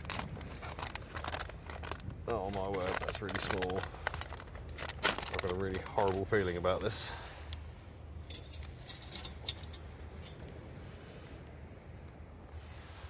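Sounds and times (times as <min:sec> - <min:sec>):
small camp kit clinking: 0:00.0 - 0:07.6, 0:08.2 - 0:10.6
low steady rumble: 0:00.0 - 0:13.0.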